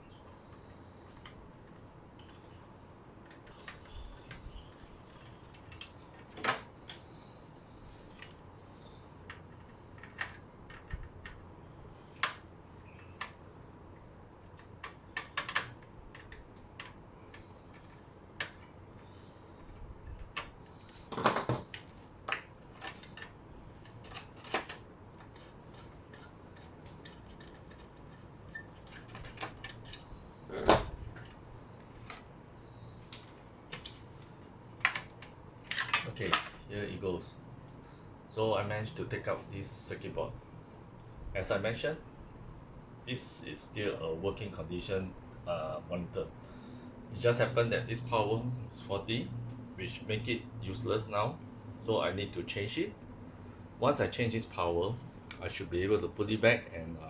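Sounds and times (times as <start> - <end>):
metal and plastic parts handled: 20.0 - 32.3, 33.0 - 36.6
parts clattering: 20.2 - 32.4.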